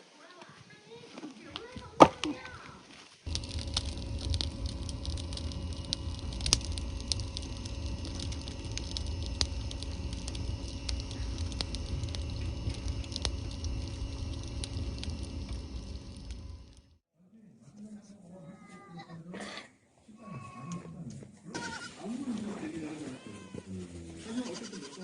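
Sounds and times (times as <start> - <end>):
firewood crackling and popping: 3.3 - 17.0
low steady rumble: 3.3 - 17.0.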